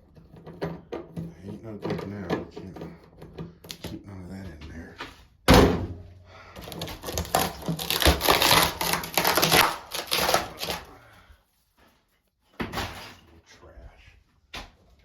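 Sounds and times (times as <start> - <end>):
rotten wood crunching: 6.6 - 11.2.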